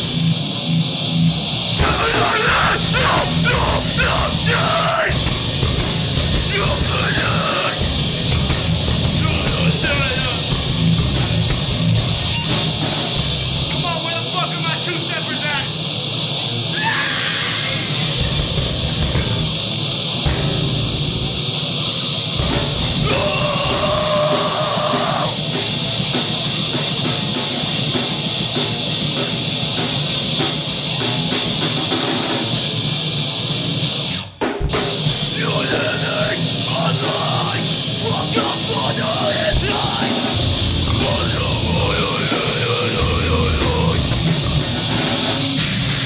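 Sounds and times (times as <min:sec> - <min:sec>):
drum kit: 0:00.0 - 0:00.6, 0:01.8 - 0:13.9, 0:18.0 - 0:46.0
distorted electric guitar: 0:00.0 - 0:46.0
person singing: 0:01.8 - 0:05.3, 0:06.4 - 0:07.9, 0:23.0 - 0:25.4, 0:35.3 - 0:44.3.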